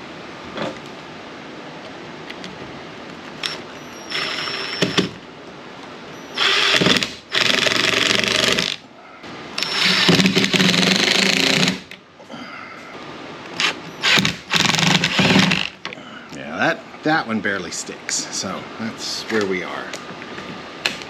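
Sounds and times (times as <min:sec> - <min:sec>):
power tool motor running: 0:03.4 - 0:05.1, 0:06.3 - 0:08.8, 0:09.6 - 0:11.8, 0:13.6 - 0:15.8.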